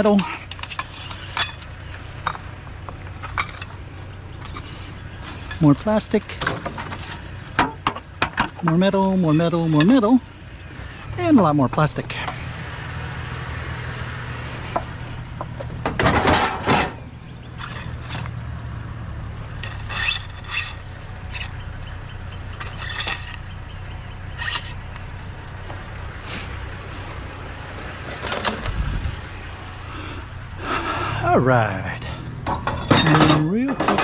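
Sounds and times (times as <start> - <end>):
scrap metal and plastic clinking: 0.0 - 3.8, 4.4 - 10.7, 15.8 - 18.4, 19.5 - 23.5, 24.4 - 25.0, 32.4 - 34.0
steady low hum: 0.0 - 34.0.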